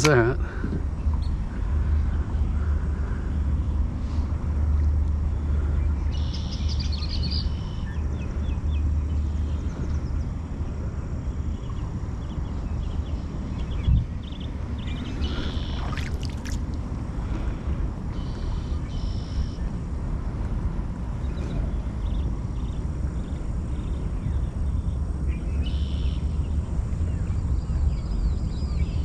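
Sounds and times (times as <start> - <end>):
steady low rumble: 0.0 - 29.0
small birds chirping: 11.5 - 16.7.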